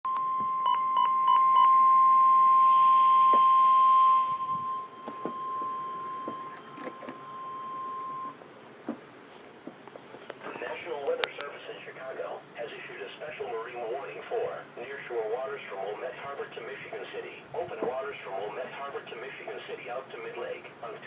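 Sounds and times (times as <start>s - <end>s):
short beeps: 0.1s - 8.4s
steady high-pitched warning tone: 0.1s - 8.4s.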